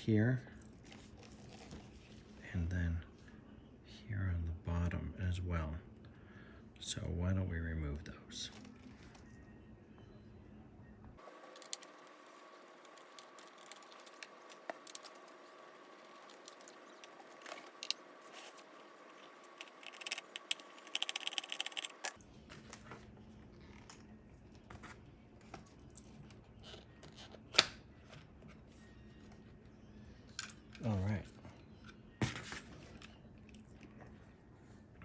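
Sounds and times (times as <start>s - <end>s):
faint steady hum: 0.0s - 35.0s
screwdriver clicking and scraping: 19.2s - 22.2s.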